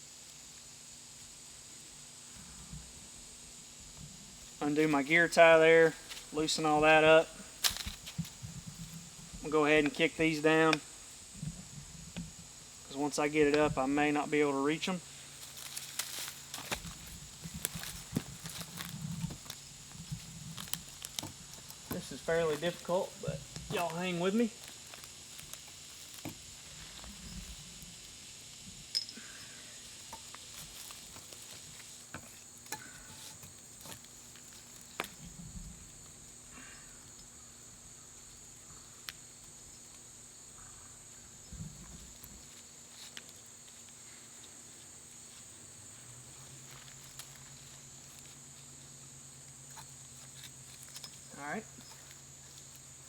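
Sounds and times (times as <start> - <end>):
insects droning: 0.0 - 53.0
clicks and knocks against tree: 7.6 - 9.0, 15.4 - 24.0, 24.6 - 27.2, 30.0 - 35.4.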